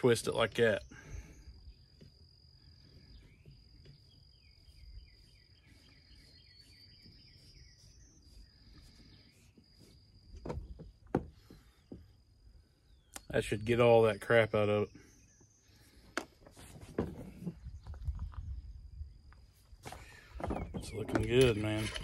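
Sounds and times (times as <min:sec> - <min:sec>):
insects buzzing: 0:00.0 - 0:22.0
insect trilling chirps: 0:00.2 - 0:10.4.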